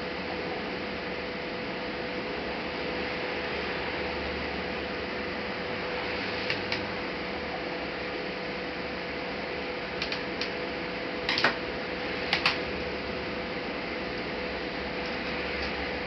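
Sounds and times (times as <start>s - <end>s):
faint hum: 0.0s - 16.0s
laptop parts clicking: 10.0s - 10.5s.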